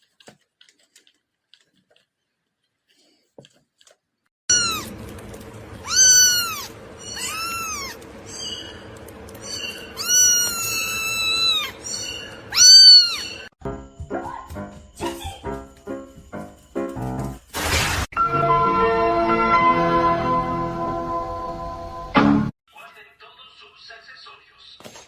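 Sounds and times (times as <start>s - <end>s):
cat meowing: 4.5s - 4.9s, 5.8s - 8.0s, 9.9s - 13.5s.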